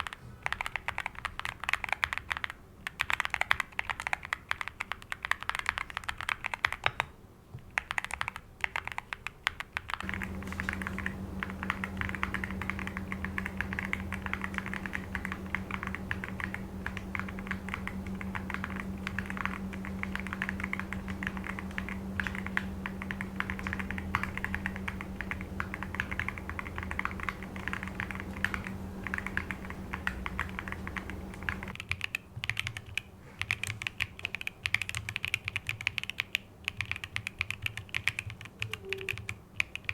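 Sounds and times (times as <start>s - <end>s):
typing on mechanical keyboard: 0.0s - 7.1s, 7.7s - 39.9s
steady low hum: 10.0s - 31.8s.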